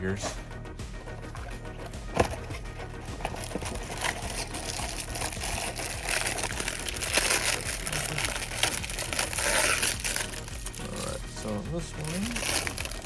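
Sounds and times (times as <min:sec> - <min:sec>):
plastic packaging crinkling: 0:02.2 - 0:13.0.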